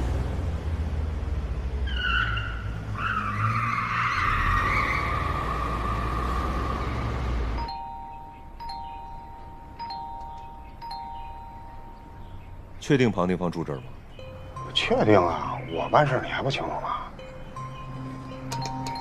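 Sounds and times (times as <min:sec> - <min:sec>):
car engine and road rumble: 0:00.0 - 0:19.0
car tires squealing: 0:01.8 - 0:07.3
two-tone doorbell chime: 0:07.6 - 0:12.3, 0:14.2 - 0:16.4, 0:17.2 - 0:19.0.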